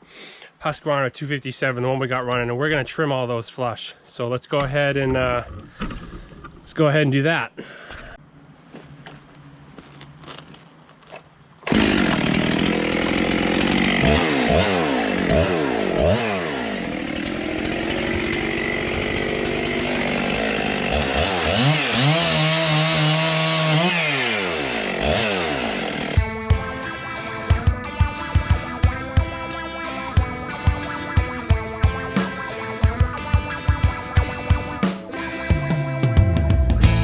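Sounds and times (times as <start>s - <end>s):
chainsaw cutting wood: 11.6s - 35.6s.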